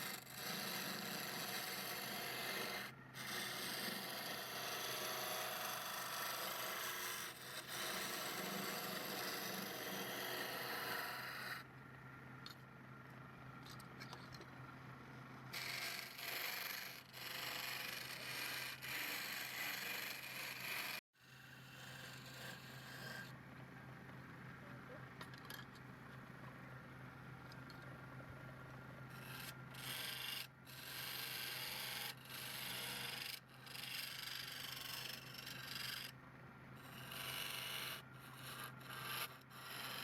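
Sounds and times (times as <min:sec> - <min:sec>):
tool scraping wood on lathe: 0:00.0 - 0:11.6.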